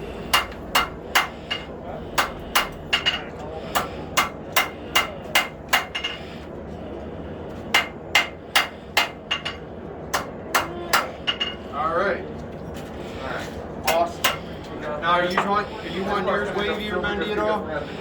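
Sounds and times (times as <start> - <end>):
hammer striking steel on anvil: 0.2 - 6.2, 7.7 - 11.6, 13.9 - 14.4.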